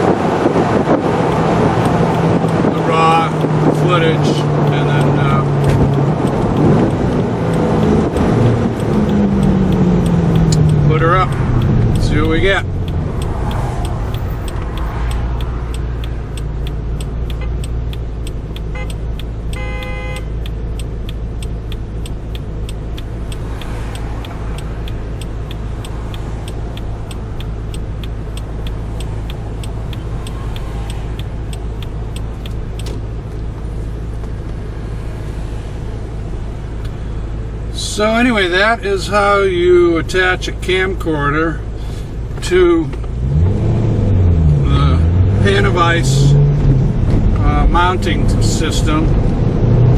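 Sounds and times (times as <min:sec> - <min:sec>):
car engine and road rumble: 0:00.0 - 0:49.9
fast ticking: 0:01.2 - 0:34.2.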